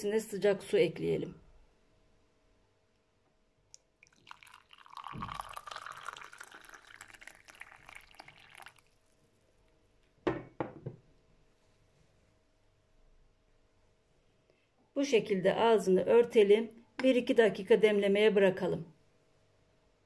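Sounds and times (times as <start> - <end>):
hot water pouring into glass: 4.0 - 9.2.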